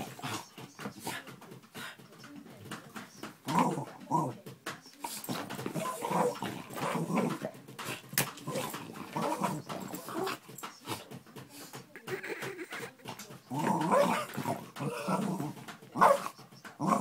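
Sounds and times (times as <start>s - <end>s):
dog growling and barking: 3.4s - 4.4s, 5.3s - 7.5s, 8.4s - 10.5s, 13.5s - 17.0s.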